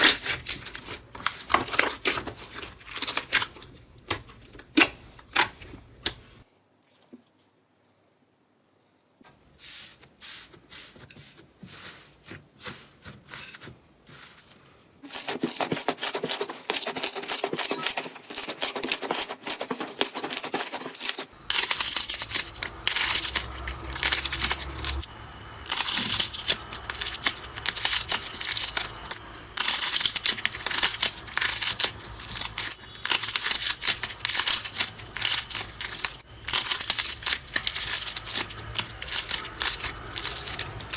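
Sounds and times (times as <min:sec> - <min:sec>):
slime crackling and popping: 0:21.5 - 0:40.9.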